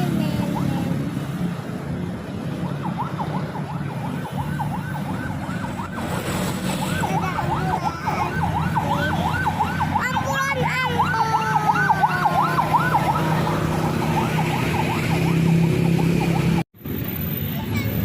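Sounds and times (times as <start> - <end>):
low rumble of vehicle engines: 0.0 - 18.0
ambulance siren yelping: 2.3 - 16.7.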